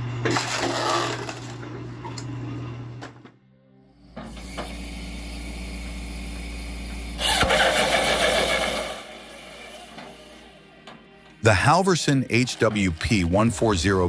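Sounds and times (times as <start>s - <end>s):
machine engine humming: 3.9s - 14.0s
harsh cutting noise: 7.1s - 10.4s, 11.5s - 14.0s.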